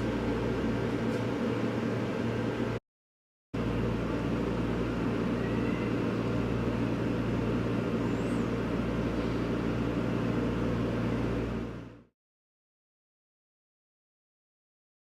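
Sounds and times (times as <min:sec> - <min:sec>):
fan whir: 0:00.0 - 0:02.8, 0:03.6 - 0:12.1
microwave oven hum: 0:00.0 - 0:02.8, 0:03.6 - 0:12.1.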